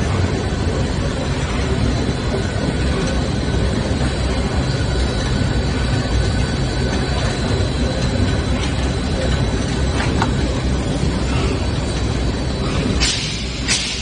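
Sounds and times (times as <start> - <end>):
faint high machine whine: 0.0 - 14.0
industrial machinery rumble and roar: 0.0 - 14.0.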